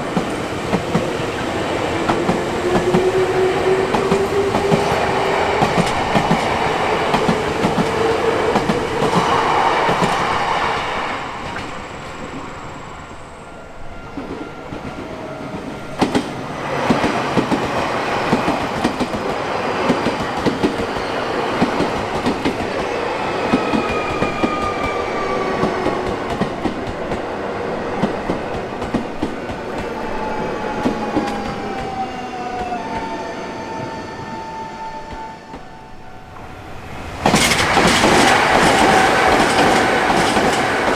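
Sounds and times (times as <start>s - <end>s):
electric train passing: 0.0s - 40.9s
wheels clacking over rail joints: 14.1s - 40.9s.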